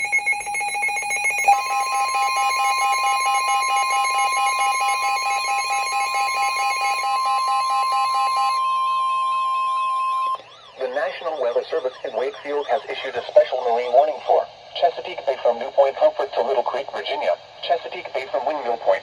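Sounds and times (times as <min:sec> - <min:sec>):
fast-pulsing electronic beeping: 0:00.0 - 0:13.2
steady high alarm tone: 0:00.0 - 0:14.0.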